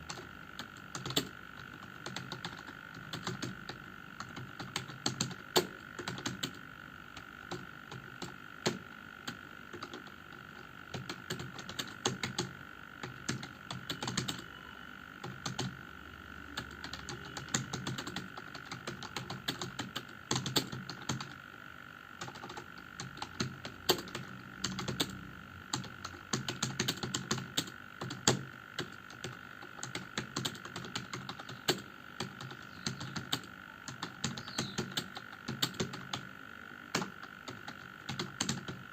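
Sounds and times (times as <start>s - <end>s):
keyboard typing: 0.0s - 15.8s, 16.5s - 21.4s, 22.2s - 36.3s, 36.9s - 38.9s
faint high tone: 14.4s - 14.9s.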